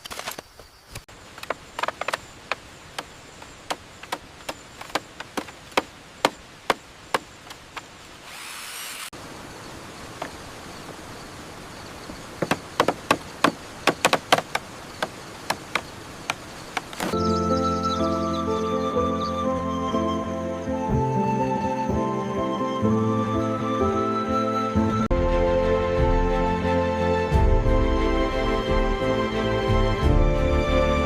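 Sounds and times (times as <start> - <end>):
tool chopping wood: 3.7 - 7.3, 12.4 - 17.2.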